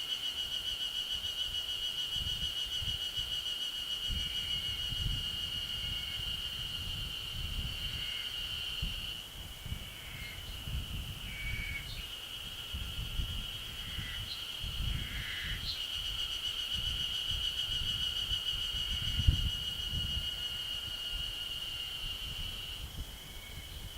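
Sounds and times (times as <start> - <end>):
cicadas singing: 0.0 - 23.9.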